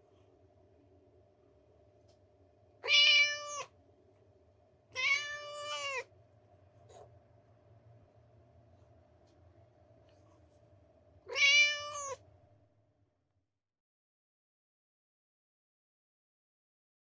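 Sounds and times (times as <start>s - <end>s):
cat meowing: 2.8s - 3.8s, 4.9s - 6.1s, 11.2s - 12.2s.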